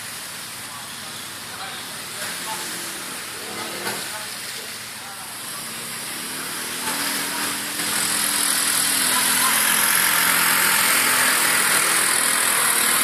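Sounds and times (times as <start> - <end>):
quad bike engine running: 5.3 - 13.0.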